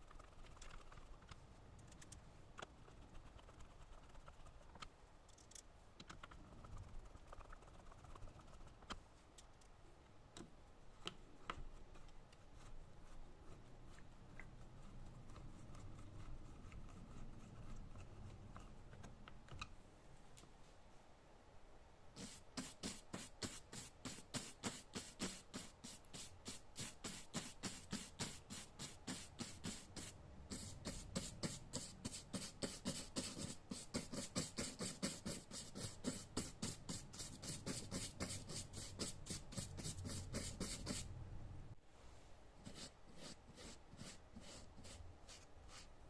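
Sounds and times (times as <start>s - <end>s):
rapid rubbing strokes: 6.2s - 9.0s, 22.2s - 41.1s.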